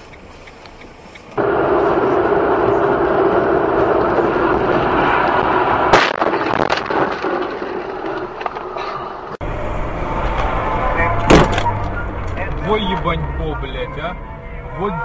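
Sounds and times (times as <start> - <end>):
road noise inside moving car: 0.0 - 6.3, 8.5 - 15.0
sharp impact bang: 10.2 - 12.5.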